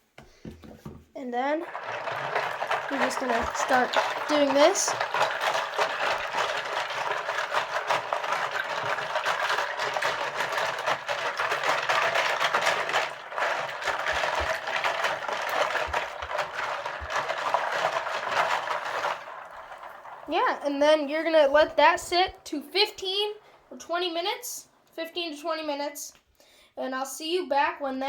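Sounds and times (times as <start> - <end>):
water sloshing: 1.5 - 23.7.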